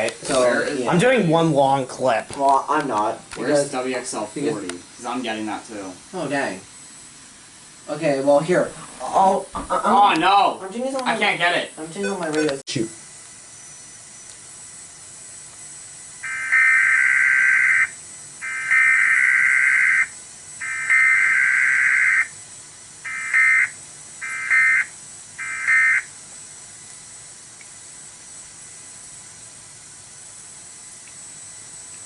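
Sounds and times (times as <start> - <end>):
buzzy data bursts: 0.0 - 31.9
radio hiss: 0.0 - 32.0.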